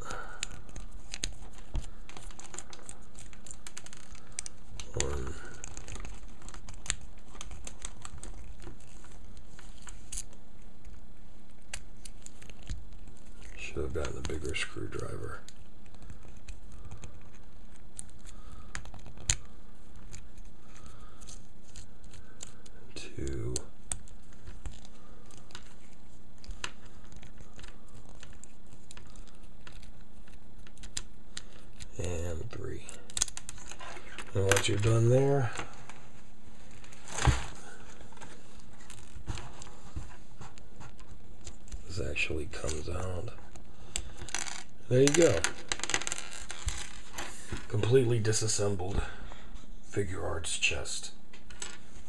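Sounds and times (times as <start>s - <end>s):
steady low hum: 0.0s - 52.0s
small clicks and taps of parts: 0.4s - 11.0s, 23.5s - 32.0s.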